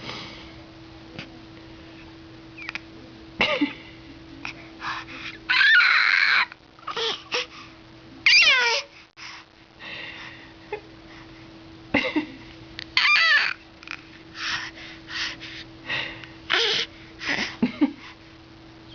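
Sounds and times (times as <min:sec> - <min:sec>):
baby squealing: 0:05.5 - 0:06.5, 0:08.3 - 0:08.7, 0:13.0 - 0:13.6.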